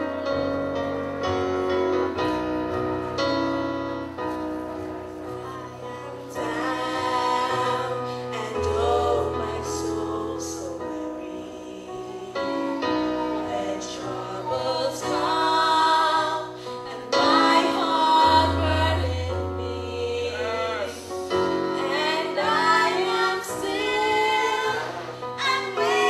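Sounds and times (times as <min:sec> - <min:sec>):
choir singing slow sacred song: 0:05.3 - 0:26.0.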